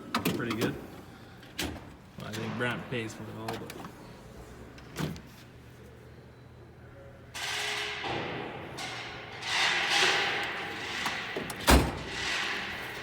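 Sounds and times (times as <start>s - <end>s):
metal drawers sliding: 8.8s - 13.0s.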